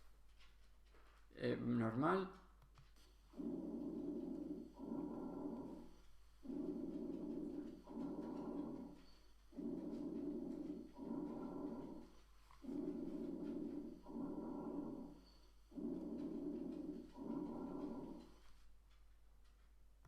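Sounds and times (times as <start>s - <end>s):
soft rushing breath sounds: 3.3s - 18.6s.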